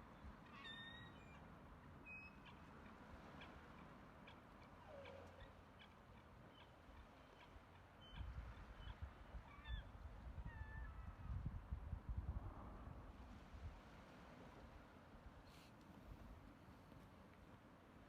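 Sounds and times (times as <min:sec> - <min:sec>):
faint bird calls: 0:04.3 - 0:11.2
wind on microphone: 0:10.0 - 0:13.7.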